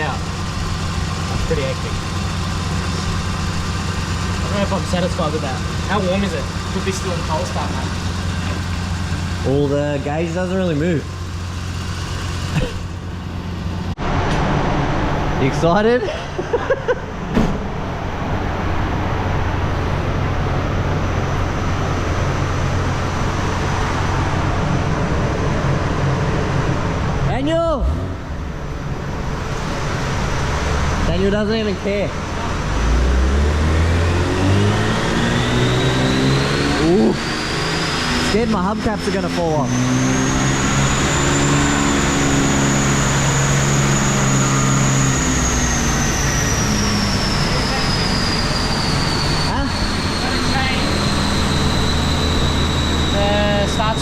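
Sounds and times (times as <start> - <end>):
car engine idling: 0.0 - 14.0, 15.0 - 54.0
thin high whine: 40.3 - 54.0.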